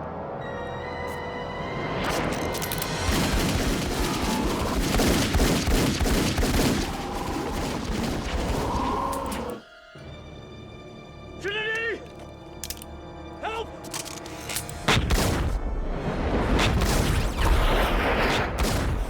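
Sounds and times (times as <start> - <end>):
tense orchestral score: 0.0 - 19.0
rapid gunfire volley: 3.1 - 8.7, 16.6 - 19.0.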